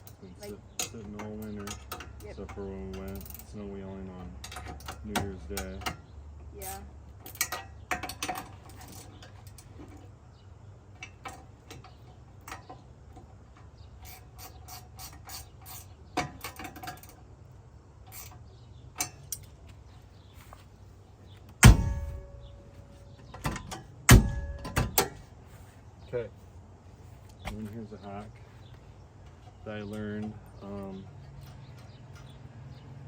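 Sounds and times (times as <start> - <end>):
small metallic clicks and rattles: 0.0 - 10.2, 10.9 - 19.7, 21.4 - 25.3, 29.2 - 33.0
loud metal clank ringing: 21.6 - 22.8, 23.4 - 25.2.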